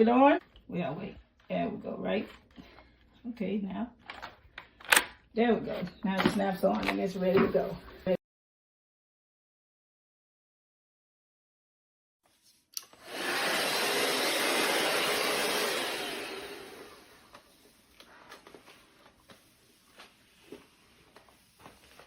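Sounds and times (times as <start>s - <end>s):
vacuum suction motor running: 12.8s - 17.5s.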